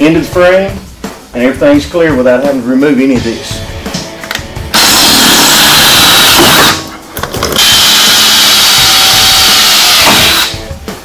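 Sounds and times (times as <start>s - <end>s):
power tool running: 4.7s - 6.8s, 7.6s - 10.6s.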